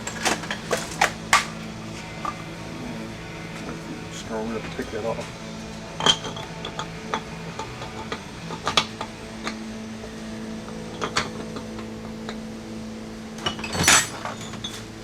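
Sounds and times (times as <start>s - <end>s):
metal tools clinking: 0.0s - 2.4s, 6.0s - 9.7s, 13.4s - 14.9s
steady low hum: 0.0s - 15.0s.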